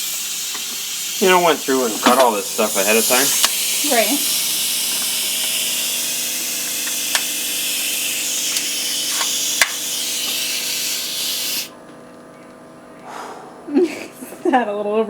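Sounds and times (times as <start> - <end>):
compressed air hissing: 0.0 - 11.8
sharp clicks: 6.7 - 7.3.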